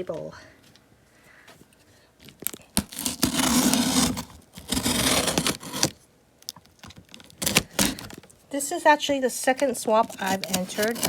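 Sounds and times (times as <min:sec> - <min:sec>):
packing tape tearing: 0:02.4 - 0:06.0, 0:06.8 - 0:08.3, 0:10.0 - 0:11.0.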